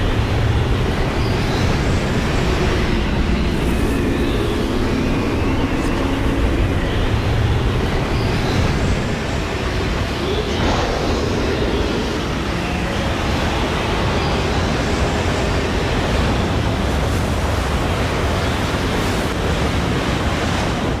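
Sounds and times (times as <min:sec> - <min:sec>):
deep rumble: 0:00.0 - 0:13.4
loud rush of wind: 0:00.0 - 0:21.0.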